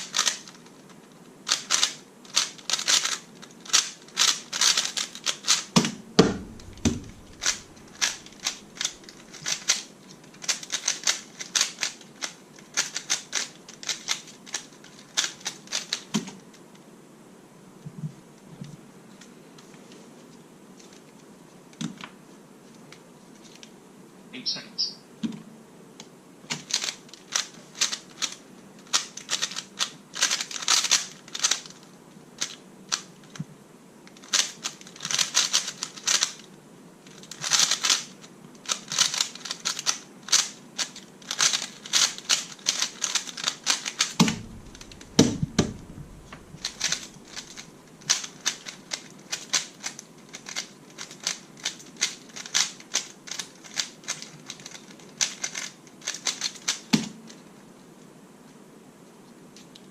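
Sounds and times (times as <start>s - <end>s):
puzzle cube turning clicks: 1.5s - 5.7s, 6.4s - 16.1s, 34.1s - 36.4s, 37.1s - 38.1s, 38.7s - 57.4s
dull knocks: 6.2s - 8.2s, 44.2s - 47.4s.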